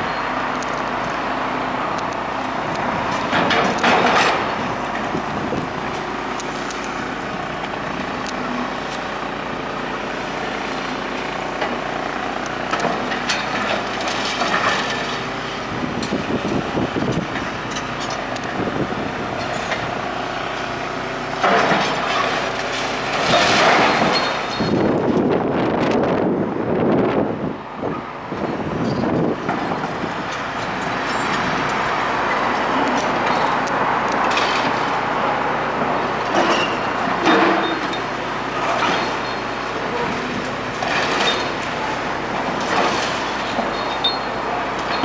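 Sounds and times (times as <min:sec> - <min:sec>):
heavy demolition machinery running: 0:00.0 - 0:45.0
demolition clattering and scraping: 0:00.3 - 0:26.2, 0:28.8 - 0:45.0.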